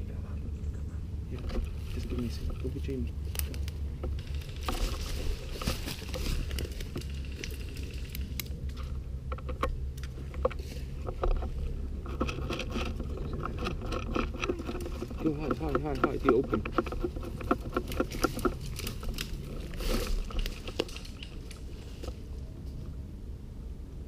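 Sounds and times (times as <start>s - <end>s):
low microphone rumble: 0.0s - 24.0s
sharp crackles: 1.4s - 22.3s
footsteps crunching through dry brush: 1.6s - 8.5s, 17.9s - 22.3s.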